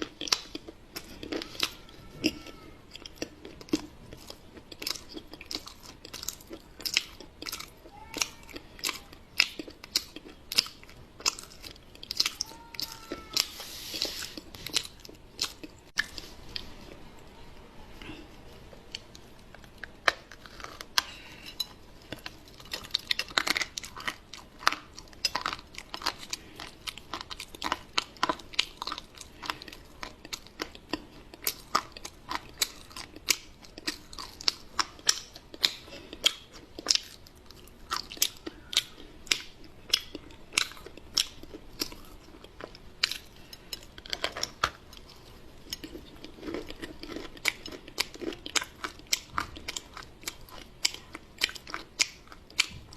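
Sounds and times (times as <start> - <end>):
crunchy chewing: 0.0 - 17.2, 17.9 - 52.9
soft wet chewing: 0.0 - 52.9.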